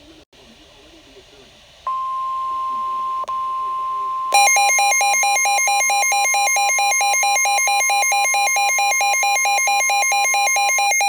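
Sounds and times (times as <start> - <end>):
buzzy warbling electronic alarm: 2.6 - 11.0.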